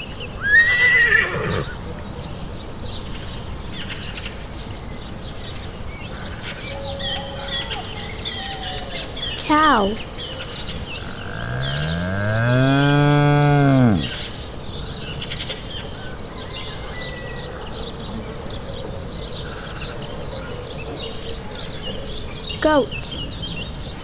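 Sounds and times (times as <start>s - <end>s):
birds chirping: 5.6s - 15.0s, 17.7s - 23.9s
cow mooing: 11.0s - 14.2s.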